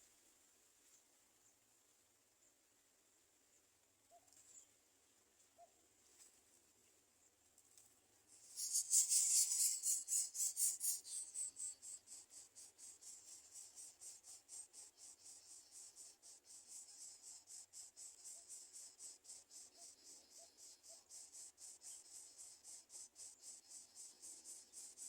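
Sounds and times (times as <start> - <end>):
nestlings begging raspy hissing: 8.4 - 25.0.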